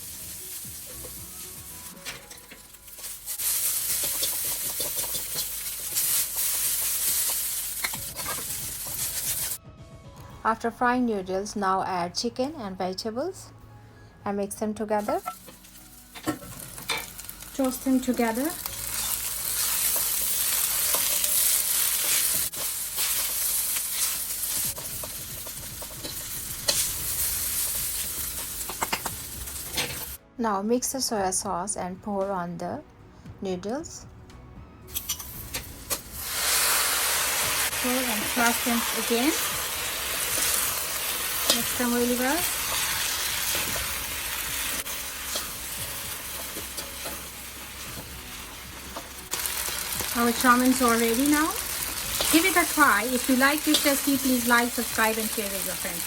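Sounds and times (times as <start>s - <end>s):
noodles sizzling in oil: 0.0s - 9.6s, 15.0s - 30.2s, 35.0s - 56.0s
utensil clicking against wok: 4.0s - 5.6s.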